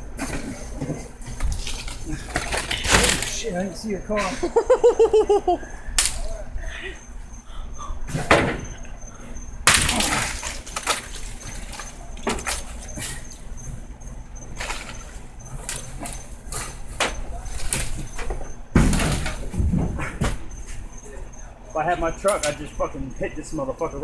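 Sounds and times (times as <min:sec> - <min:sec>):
crash of branches: 0:01.5 - 0:03.6, 0:09.6 - 0:13.2
tree branches snapping: 0:06.0 - 0:06.3, 0:09.7 - 0:12.7.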